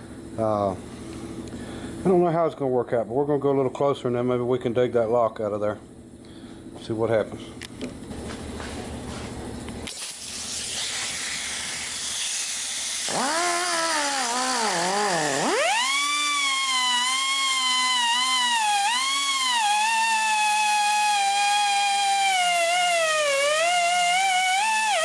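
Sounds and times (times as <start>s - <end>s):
air hissing: 9.8s - 25.0s
cut-off wheel whining: 10.6s - 25.0s.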